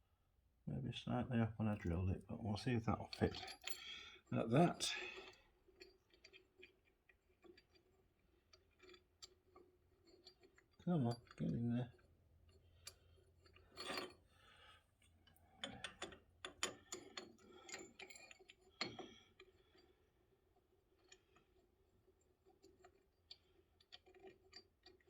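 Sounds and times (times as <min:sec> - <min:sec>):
small metal parts clinking: 0:05.1 - 0:14.3, 0:15.0 - 0:19.9.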